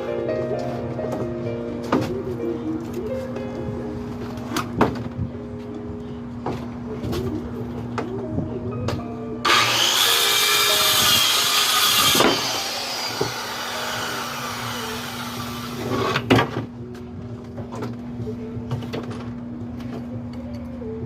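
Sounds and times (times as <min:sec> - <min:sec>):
power saw cutting wood: 0:09.4 - 0:16.3.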